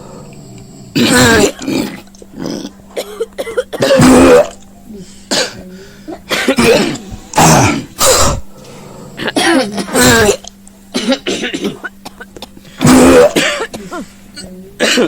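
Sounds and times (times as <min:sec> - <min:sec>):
person coughing: 0:01.0 - 0:02.0, 0:02.9 - 0:04.6, 0:05.2 - 0:08.5, 0:09.2 - 0:15.0.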